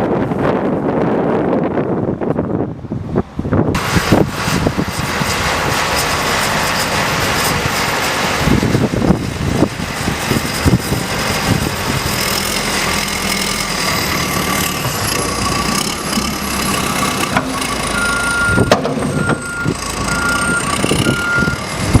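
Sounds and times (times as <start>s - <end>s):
heavy vehicle engine running: 0.1s - 22.0s
backup alarm beeping: 16.7s - 21.6s.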